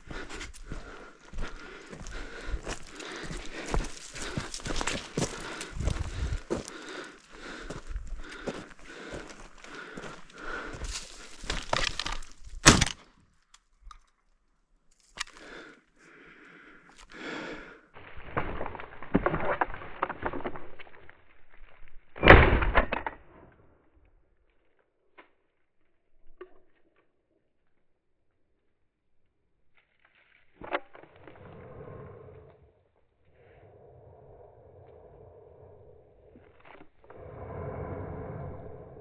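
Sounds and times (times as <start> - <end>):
shotgun shots: 12.6 - 13.0.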